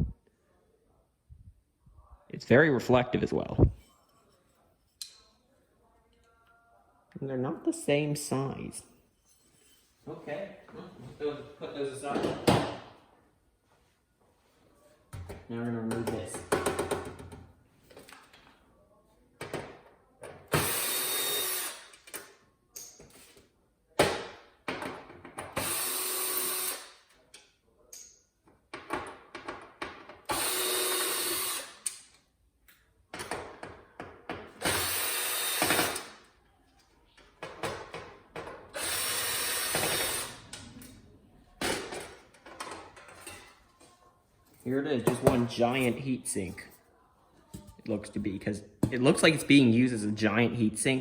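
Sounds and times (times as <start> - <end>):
power drill motor whine: 30.3 - 31.7, 34.7 - 36.0, 38.8 - 40.3.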